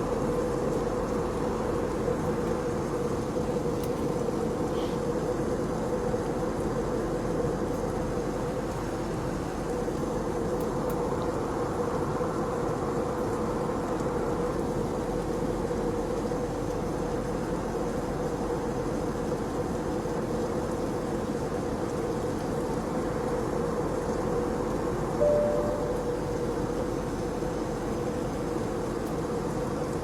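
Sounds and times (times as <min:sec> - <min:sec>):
airliner cabin drone: 0:00.0 - 0:17.0, 0:24.6 - 0:30.0
short high tone: 0:25.2 - 0:26.3.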